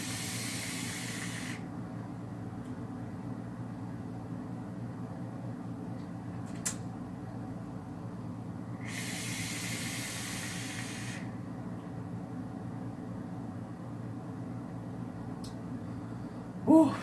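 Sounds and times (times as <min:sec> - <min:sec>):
breathy vape hiss: 0:00.0 - 0:01.6, 0:08.8 - 0:11.3
steady low hum: 0:00.0 - 0:17.0.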